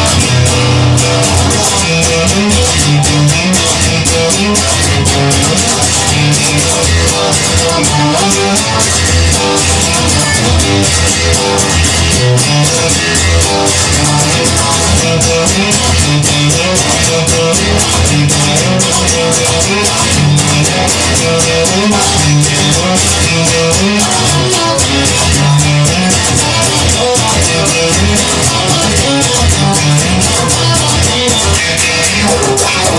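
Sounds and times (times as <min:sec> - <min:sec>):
rock band playing instrumental: 0:00.0 - 0:32.9.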